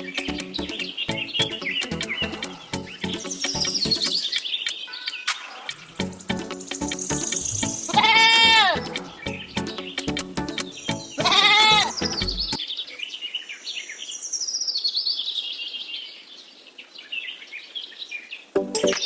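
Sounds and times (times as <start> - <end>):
background music: 0.0 - 12.6, 18.6 - 19.0
birds chirping: 0.0 - 12.6
goat or sheep bleating: 7.4 - 9.6, 11.2 - 12.4.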